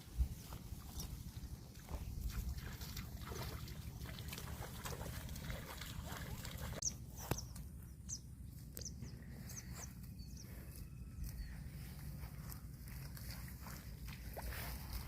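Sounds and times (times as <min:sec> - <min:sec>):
low outdoor rumble: 0:00.0 - 0:15.0
small birds chirping: 0:00.2 - 0:02.3, 0:06.6 - 0:12.7.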